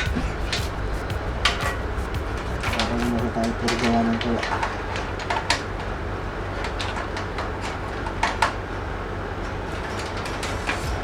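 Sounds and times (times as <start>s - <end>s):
steady low hum: 0.0s - 4.0s.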